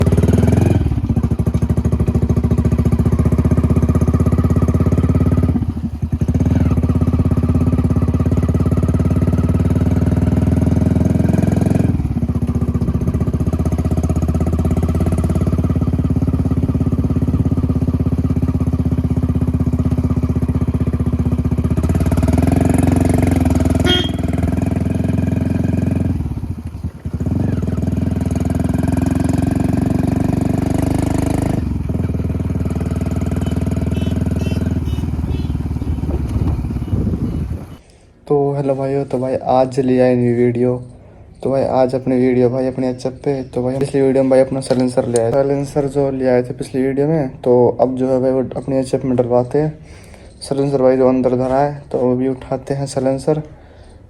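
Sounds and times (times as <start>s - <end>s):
motorcycle engine running: 0.0s - 37.8s.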